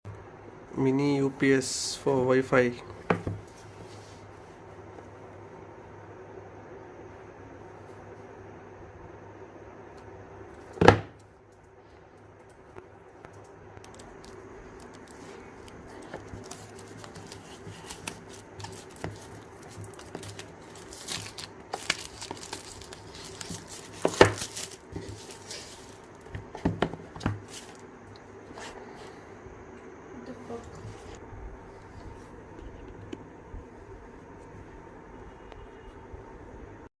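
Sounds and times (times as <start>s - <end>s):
packaging rustling and tearing: 13.8s - 26.4s, 27.1s - 27.8s.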